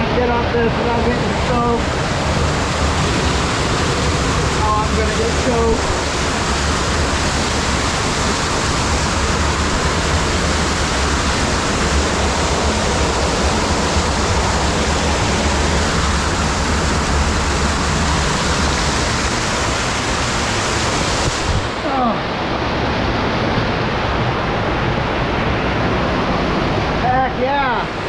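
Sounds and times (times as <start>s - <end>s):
waterfall pouring and splashing: 0.0s - 28.0s.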